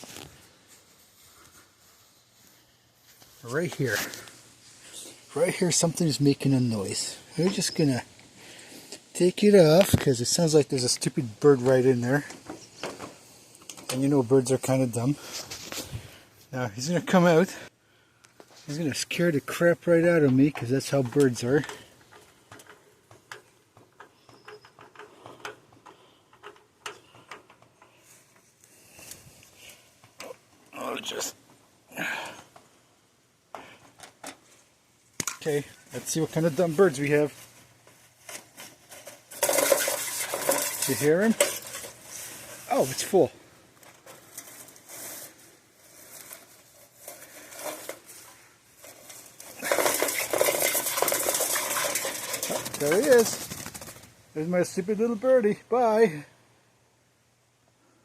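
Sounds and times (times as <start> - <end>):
scratching and rustling: 35.4 - 54.2.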